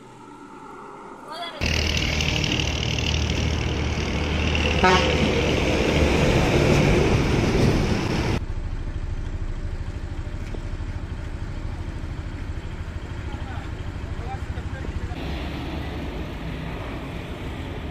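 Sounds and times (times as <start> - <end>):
bus engine running: 1.6 - 17.9
bus horn long blast: 4.7 - 5.6.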